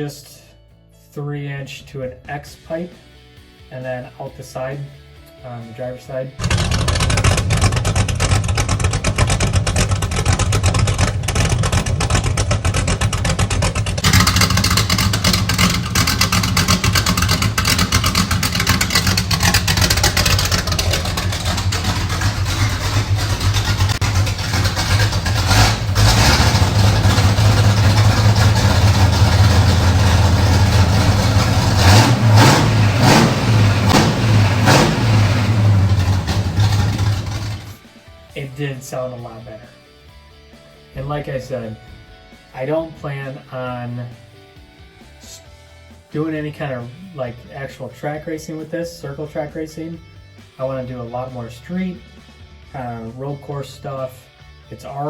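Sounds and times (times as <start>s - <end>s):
car engine idling and revving: 6.4s - 37.9s.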